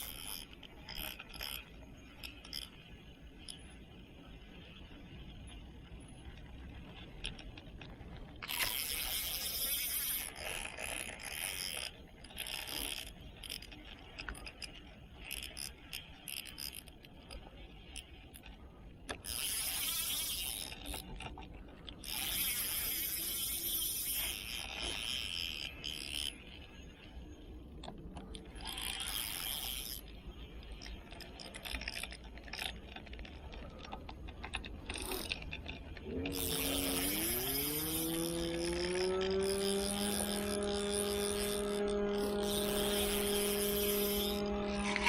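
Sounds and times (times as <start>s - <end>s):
fishing reel clicking and whirring: 0.0s - 3.8s, 6.4s - 45.0s
motor rising in pitch: 36.0s - 45.0s.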